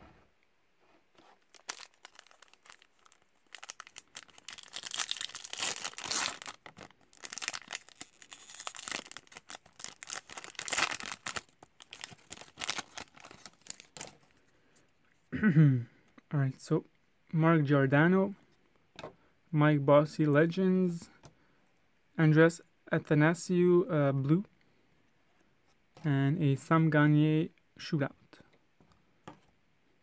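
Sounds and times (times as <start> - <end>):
wrapper tearing and crinkling: 1.4 - 14.2.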